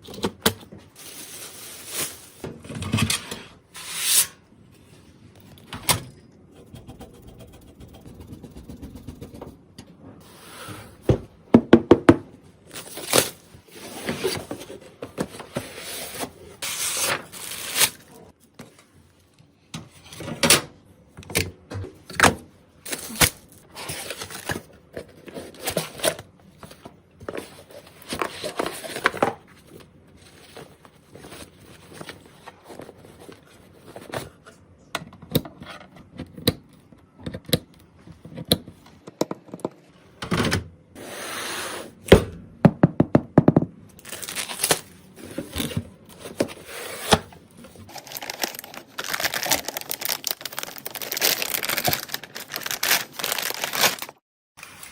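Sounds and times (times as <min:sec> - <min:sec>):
packaging rustling and crinkling: 0:00.9 - 0:02.5, 0:12.7 - 0:18.4, 0:44.0 - 0:54.9.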